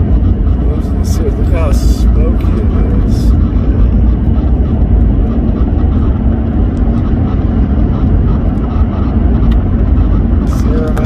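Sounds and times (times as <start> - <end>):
road and engine rumble in car: 0.0 - 11.0.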